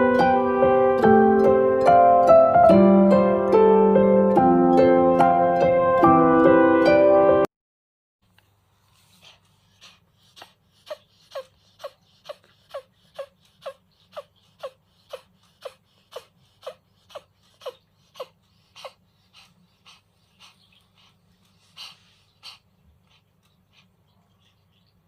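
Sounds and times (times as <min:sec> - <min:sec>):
cat short sharp noisy breaths: 0:09.0 - 0:24.0.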